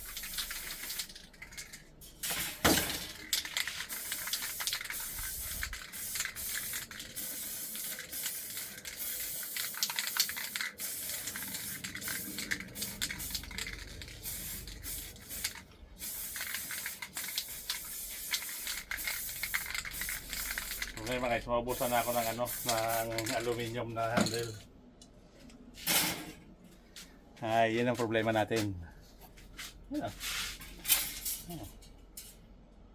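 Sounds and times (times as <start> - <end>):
hissy background: 2.1 - 24.7.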